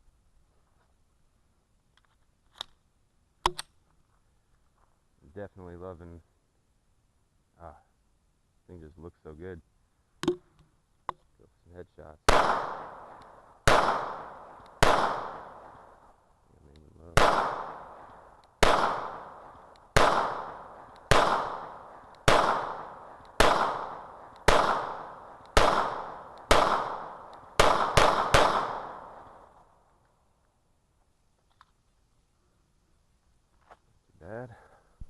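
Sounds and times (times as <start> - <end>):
pistol shots with echo: 12.3 - 16.0, 17.1 - 29.6.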